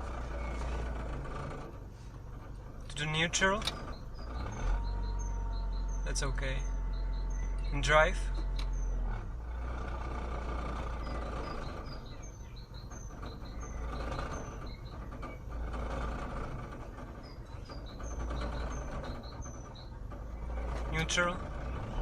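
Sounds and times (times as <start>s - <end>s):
car engine idling roughly: 0.0s - 22.0s
faint bird chirps: 3.2s - 9.1s, 10.4s - 22.0s.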